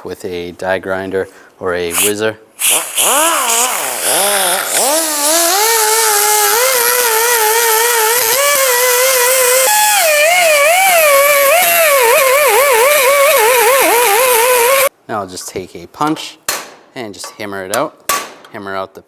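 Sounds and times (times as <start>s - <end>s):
high hiss: 1.8s - 14.9s
die grinder grinding metal: 3.0s - 14.9s.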